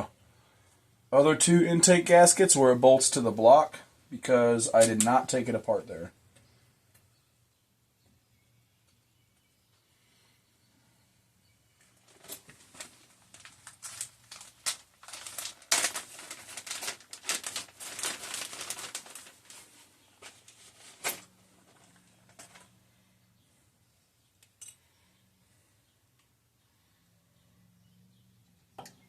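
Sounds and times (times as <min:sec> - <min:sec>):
packaging crinkling: 0:11.9 - 0:22.7.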